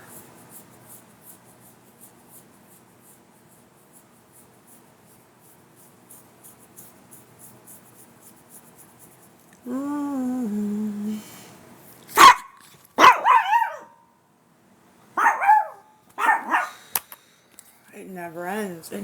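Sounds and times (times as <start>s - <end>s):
dog barking: 12.1s - 14.1s, 15.2s - 16.8s.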